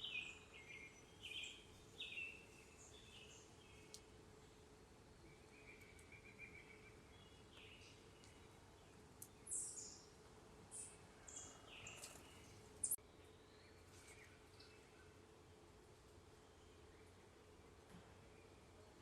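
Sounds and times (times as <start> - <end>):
birds chirping: 0.0 - 15.2
faint steady hum: 0.0 - 19.0.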